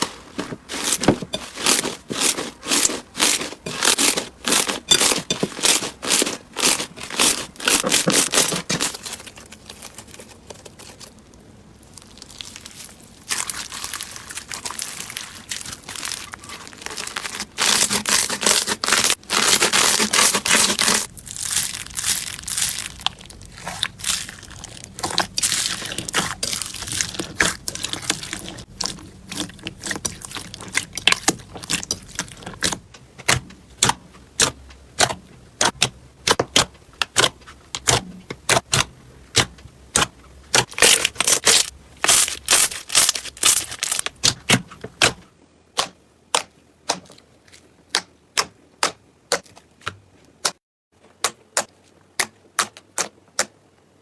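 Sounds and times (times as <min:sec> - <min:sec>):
slime crackling and popping: 0:11.1 - 0:34.6, 0:40.6 - 0:44.4.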